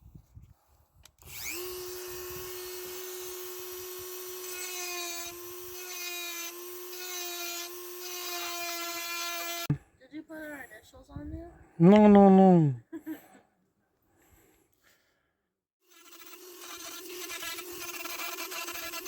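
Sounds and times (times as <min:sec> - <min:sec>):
electric power tool whine: 0:01.2 - 0:09.8, 0:15.9 - 0:19.0.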